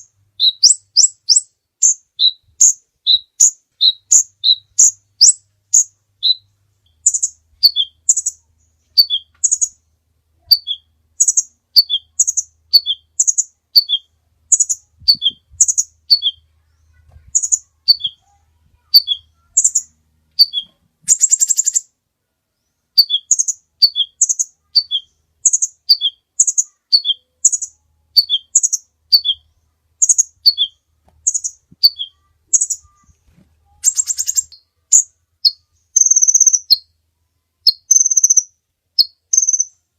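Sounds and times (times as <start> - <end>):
bird chirping: 0.0 - 37.0, 37.6 - 39.9.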